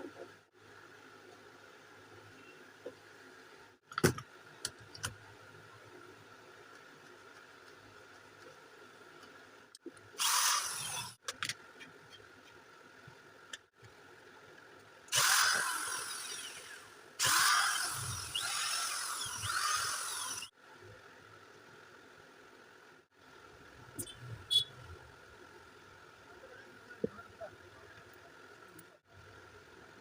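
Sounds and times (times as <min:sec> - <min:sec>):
wall chaser motor whirring: 0:15.1 - 0:20.5.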